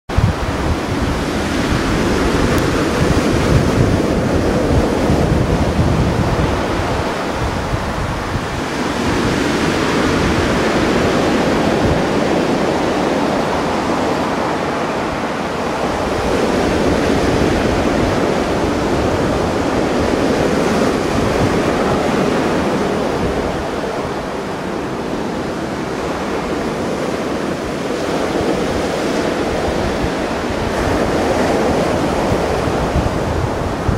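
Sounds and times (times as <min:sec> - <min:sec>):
waves breaking on shore: 0:00.1 - 0:33.9
wind rumbling on microphone: 0:00.1 - 0:33.9.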